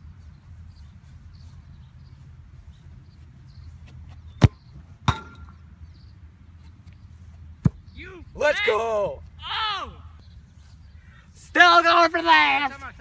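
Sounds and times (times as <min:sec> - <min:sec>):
ball kicked with a thud: 0:04.3 - 0:05.5, 0:07.6 - 0:07.8
ball striking goal frame ringing: 0:04.4 - 0:05.6.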